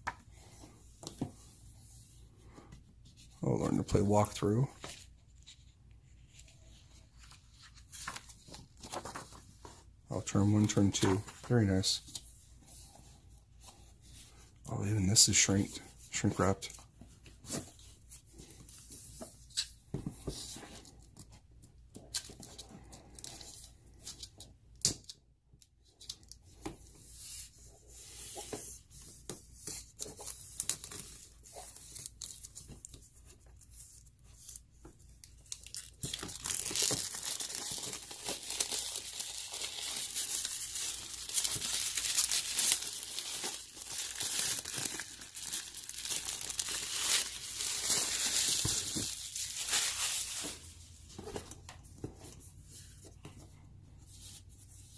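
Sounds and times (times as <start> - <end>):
plastic film crinkling and tearing: 35.2 - 50.7
plastic wrap rustling: 35.6 - 51.6.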